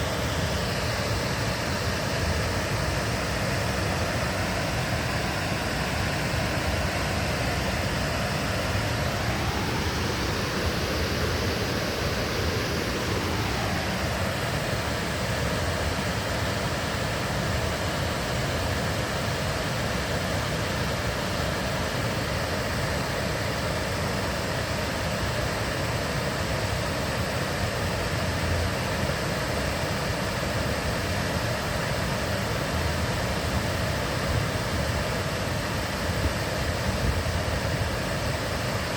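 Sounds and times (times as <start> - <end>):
river water rushing: 0.0 - 38.9.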